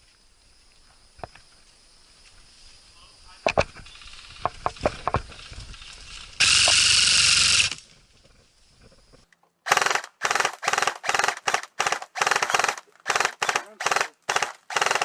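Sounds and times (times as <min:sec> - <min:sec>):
airsoft gun clicks: 0:09.7 - 0:15.0
airsoft guns firing full auto: 0:09.7 - 0:15.0.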